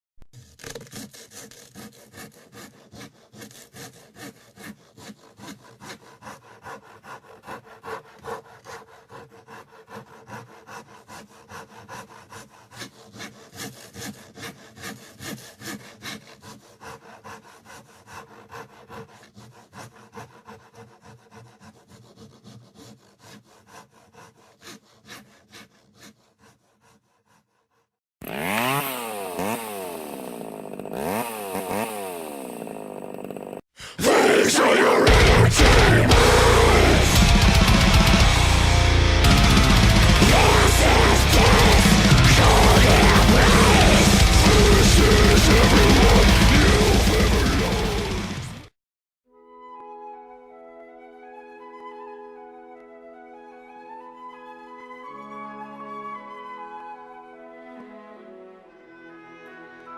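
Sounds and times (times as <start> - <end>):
loud motor revving: 28.2 - 33.6, 35.0 - 48.7
rhythmic rasping strokes: 35.0 - 48.6.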